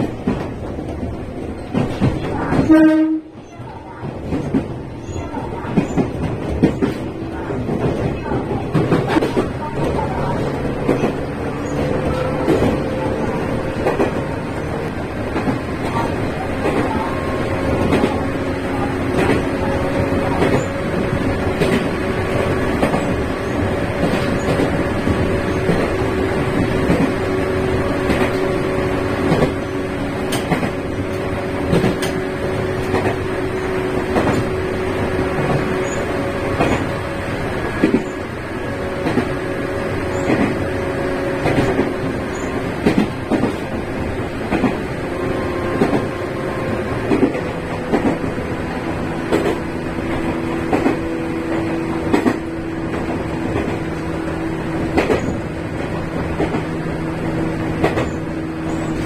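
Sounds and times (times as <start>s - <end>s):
train hum inside carriage: 0.0s - 59.0s
knocks and clicks: 5.6s - 28.5s, 29.2s - 34.6s, 54.8s - 56.8s, 57.8s - 58.2s.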